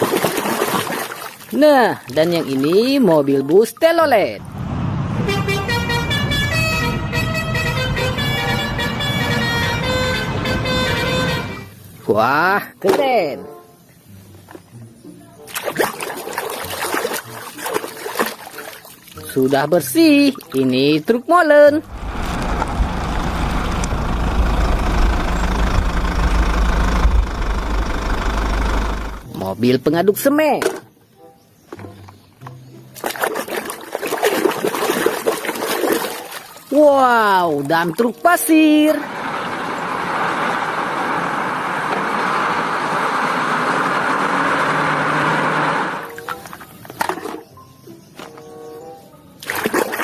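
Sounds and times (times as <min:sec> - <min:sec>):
heavy engine idling: 0:21.9 - 0:29.3.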